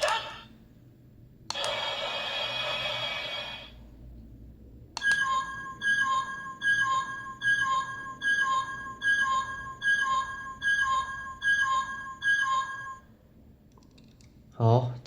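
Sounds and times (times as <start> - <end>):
toy button click: 0.0 - 0.4
hissing beam effect: 1.5 - 3.8
two-tone warning beep: 5.0 - 13.0.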